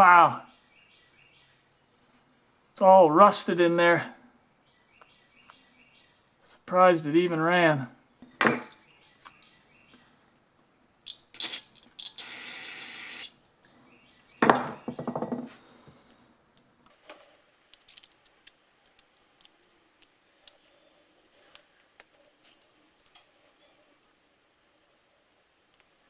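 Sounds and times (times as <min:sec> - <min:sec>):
spray hiss: 0:12.2 - 0:13.3
metal parts clattering on workbench: 0:16.9 - 0:23.3.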